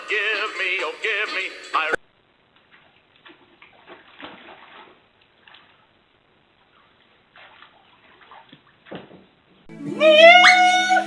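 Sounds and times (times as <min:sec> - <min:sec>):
water splashing and sloshing: 0:02.6 - 0:09.7.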